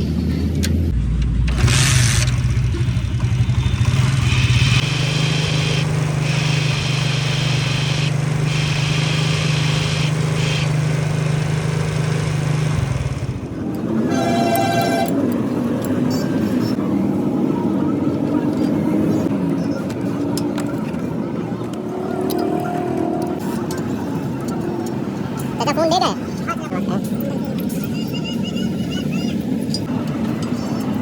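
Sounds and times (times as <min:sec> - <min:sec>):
engine running: 0:00.0 - 0:27.9
high-pitched clutch whine: 0:01.5 - 0:18.7.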